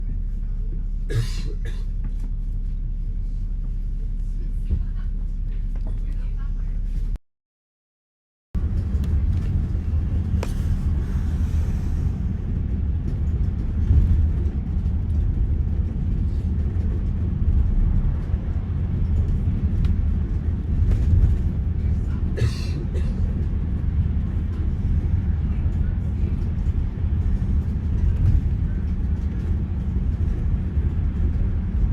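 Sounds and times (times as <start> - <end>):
moving vehicle rumble: 0.0 - 7.2, 8.6 - 31.9.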